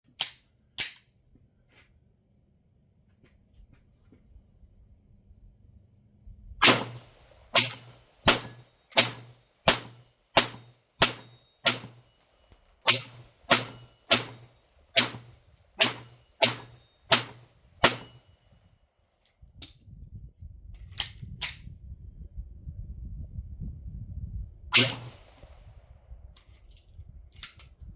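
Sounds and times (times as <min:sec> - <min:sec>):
pistol shots: 0:06.6 - 0:12.2, 0:12.8 - 0:18.2, 0:24.8 - 0:25.4.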